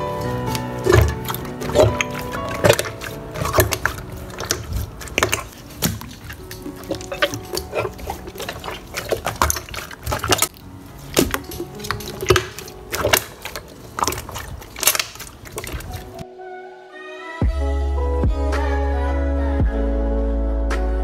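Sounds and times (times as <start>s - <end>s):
slime clicking and popping: 11.2s - 15.8s.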